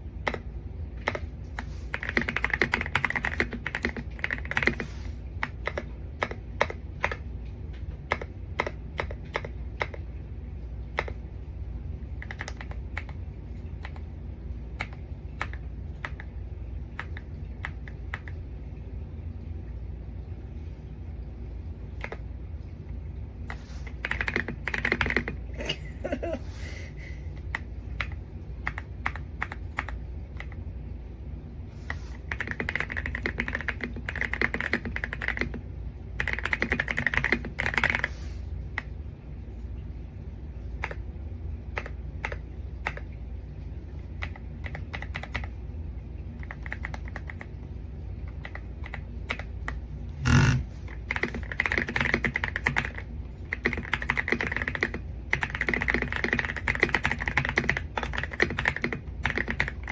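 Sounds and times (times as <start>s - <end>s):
mechanical keyboard typing: 0.2s - 7.3s, 8.1s - 10.1s, 12.2s - 13.2s, 14.8s - 16.3s, 23.8s - 25.5s, 27.5s - 30.6s, 32.2s - 35.6s, 36.2s - 38.2s, 41.8s - 43.2s, 44.2s - 45.6s, 46.4s - 47.6s, 48.3s - 59.9s.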